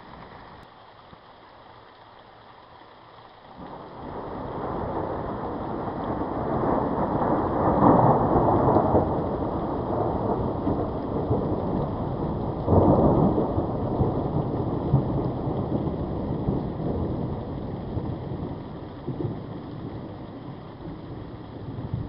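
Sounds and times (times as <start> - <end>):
steady rain: 0.0 - 22.0
thunder rolling: 3.6 - 22.0.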